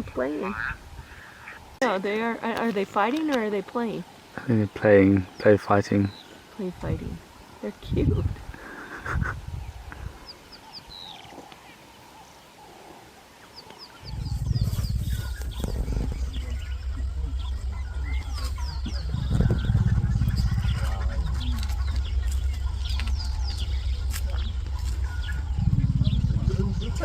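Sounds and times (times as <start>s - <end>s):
birds chirping: 0.0s - 27.0s
loud low rumble: 14.0s - 27.0s.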